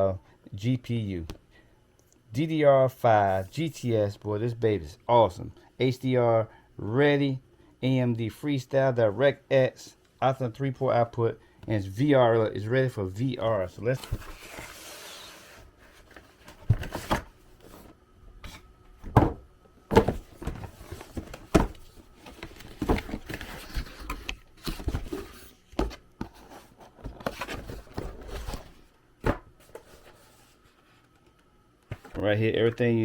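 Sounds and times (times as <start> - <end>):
cardboard knocks and scrapes: 15.9 - 30.4
packaging rustling: 19.9 - 28.8.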